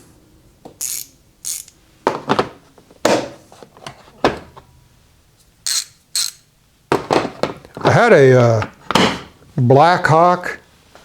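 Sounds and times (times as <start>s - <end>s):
metal tools clicking and clacking: 0.8s - 1.8s, 5.7s - 6.5s
tools scraping: 0.8s - 1.8s, 5.7s - 6.5s.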